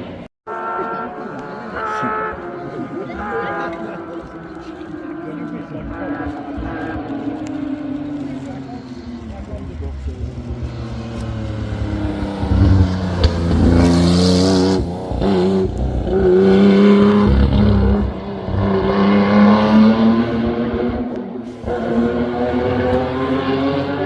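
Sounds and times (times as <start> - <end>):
racing car engine accelerating: 5.1 - 24.0.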